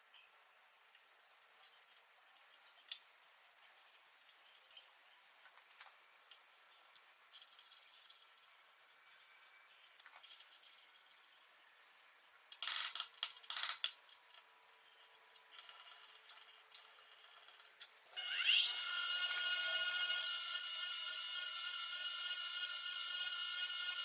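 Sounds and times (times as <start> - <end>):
power tool whining: 18.1 - 24.0.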